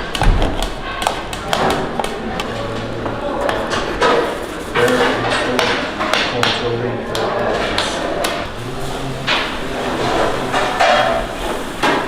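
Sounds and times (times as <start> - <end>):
voices talking: 1.4 - 11.4
tools and metal trays knocking: 9.3 - 12.0.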